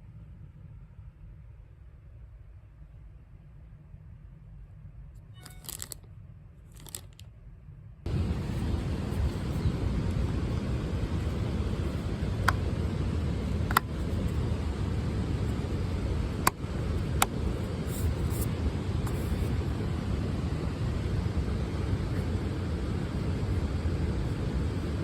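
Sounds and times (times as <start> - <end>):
road and engine drone: 8.1 - 25.0.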